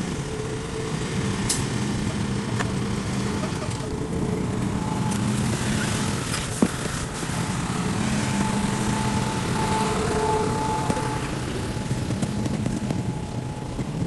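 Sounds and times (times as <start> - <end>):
heavy diesel engine running: 0.0 - 14.0.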